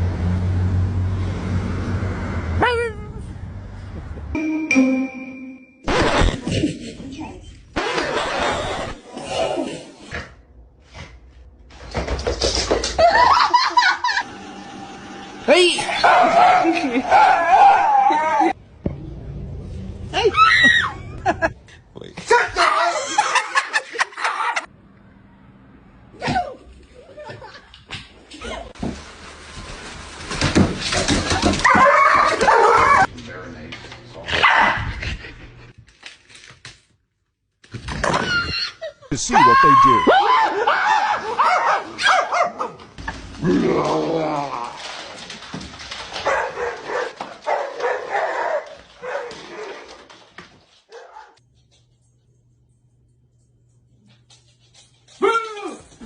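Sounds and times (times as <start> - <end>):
dog barking and yipping: 15.9 - 18.2, 31.6 - 33.1, 34.4 - 34.8, 40.1 - 42.8, 46.2 - 49.9, 50.9 - 51.4
people laughing and exclaiming: 22.3 - 24.7.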